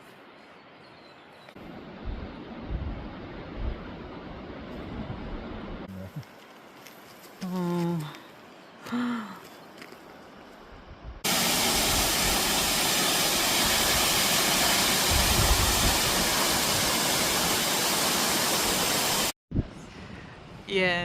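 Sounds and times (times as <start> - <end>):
waterfall rushing: 11.2 - 19.3.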